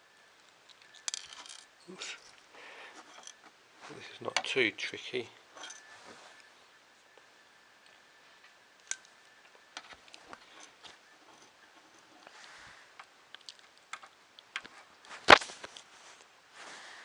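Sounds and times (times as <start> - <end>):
small parts clicking and tapping: 0.6 - 1.7, 3.0 - 3.5, 8.8 - 14.8.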